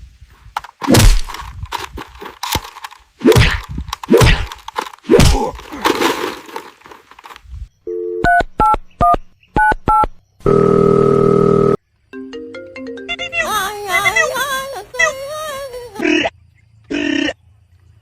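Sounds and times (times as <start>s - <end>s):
two-tone dialing beeps: 7.9s - 11.8s.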